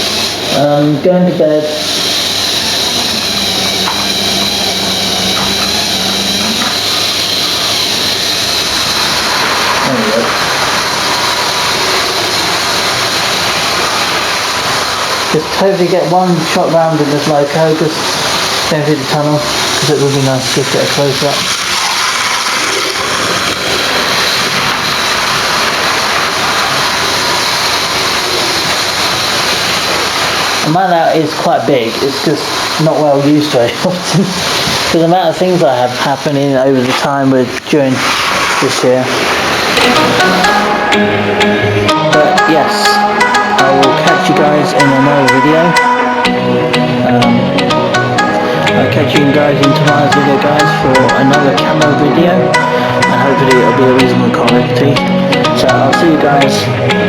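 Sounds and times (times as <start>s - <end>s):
wheels rolling on track: 0.0s - 57.0s
electric motor whine: 1.8s - 30.7s, 39.1s - 49.0s
low hum: 2.0s - 21.8s.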